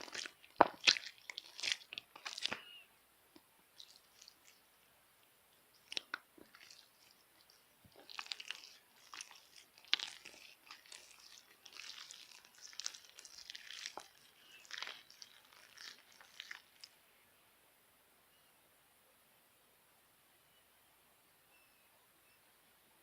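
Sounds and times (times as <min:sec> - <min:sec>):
slime crackling and snapping: 0:00.0 - 0:02.7, 0:05.8 - 0:16.9.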